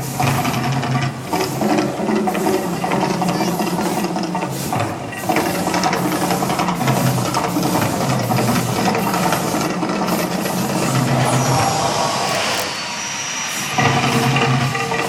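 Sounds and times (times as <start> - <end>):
rapid rhythmic clatter: 0.0 - 11.3
steady low rumble: 10.4 - 14.6.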